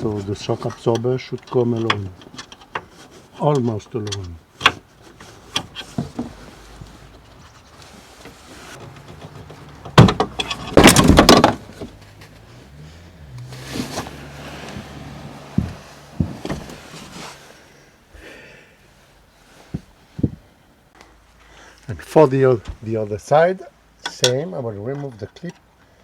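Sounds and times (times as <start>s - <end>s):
rattle of metal and trim: 0.0s - 17.4s
sharp knocks: 9.2s - 12.0s.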